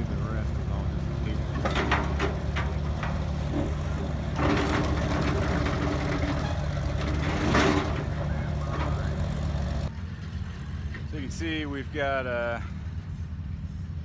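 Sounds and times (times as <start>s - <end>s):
large engine humming: 0.0s - 11.1s.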